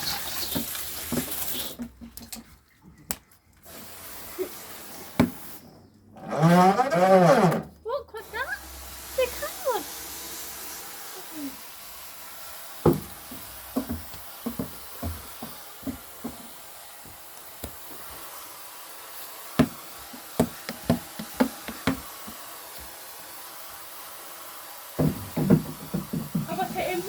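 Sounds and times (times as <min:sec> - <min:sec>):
basketball bouncing on hard floor: 0:12.9 - 0:16.5, 0:19.6 - 0:19.8, 0:20.4 - 0:22.1, 0:25.0 - 0:26.8.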